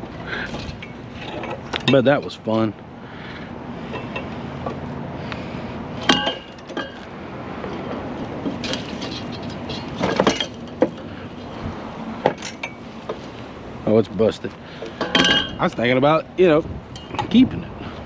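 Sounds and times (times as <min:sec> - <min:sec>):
scrap metal clanking: 0:00.3 - 0:02.4, 0:03.8 - 0:04.8, 0:06.0 - 0:11.6, 0:12.2 - 0:13.4, 0:14.7 - 0:15.9
ringing metal clang: 0:06.0 - 0:07.0, 0:15.0 - 0:15.7.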